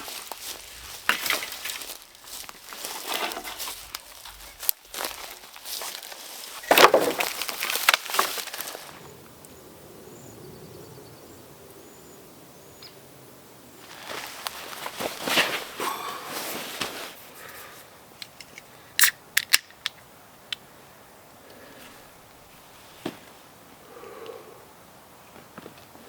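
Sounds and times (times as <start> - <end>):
footsteps crunching through dry brush: 0.0 - 9.0, 13.8 - 17.8.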